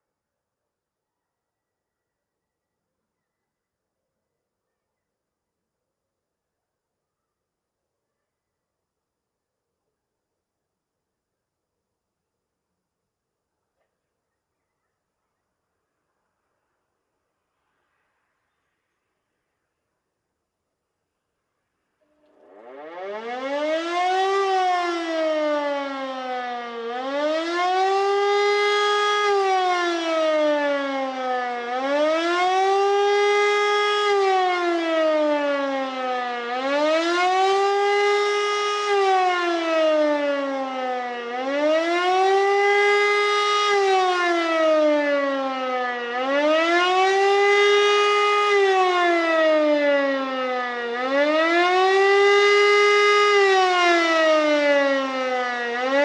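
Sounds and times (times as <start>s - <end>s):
rising and falling siren wail: 22.1s - 56.0s.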